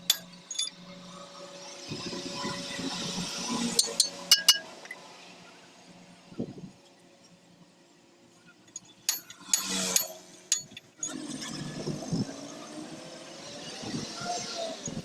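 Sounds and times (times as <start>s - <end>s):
hand tools clinking on metal: 0.0s - 0.8s, 3.8s - 5.0s, 8.7s - 11.3s
steady background noise: 0.0s - 15.0s.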